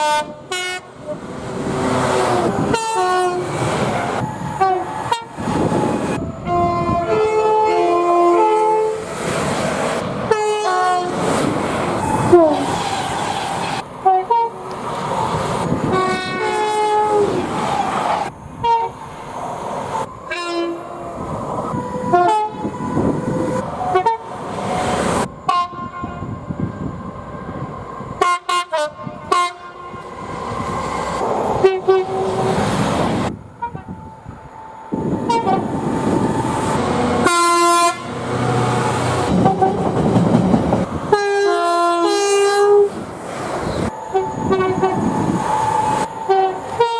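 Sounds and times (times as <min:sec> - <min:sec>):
train horn blasts: 0:00.0 - 0:01.2, 0:02.1 - 0:09.0, 0:10.3 - 0:11.2, 0:12.0 - 0:12.8, 0:14.0 - 0:14.7, 0:15.8 - 0:17.4, 0:18.6 - 0:19.0, 0:20.3 - 0:21.0, 0:22.0 - 0:23.2, 0:23.9 - 0:24.3, 0:25.5 - 0:26.4, 0:28.2 - 0:30.1, 0:31.2 - 0:32.6, 0:33.6 - 0:34.4, 0:35.0 - 0:36.2, 0:36.8 - 0:40.0, 0:41.1 - 0:43.0, 0:44.1 - 0:46.9
rumble of passing train: 0:00.0 - 0:46.9.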